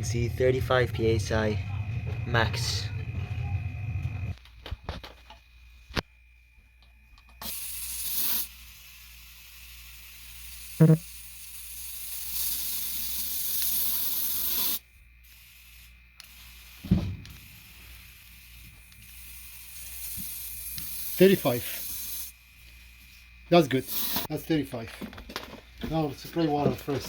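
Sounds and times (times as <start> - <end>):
compressed air hissing into tire: 7.4 - 24.3
thump: 16.8 - 17.4.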